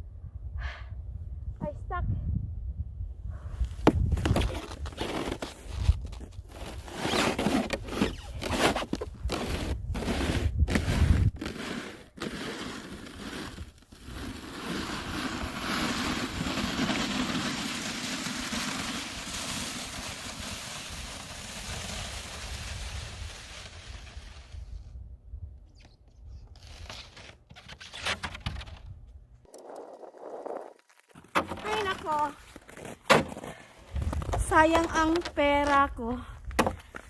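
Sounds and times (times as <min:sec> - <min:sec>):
sled scraping over snow: 0:04.2 - 0:24.7, 0:31.5 - 0:33.0.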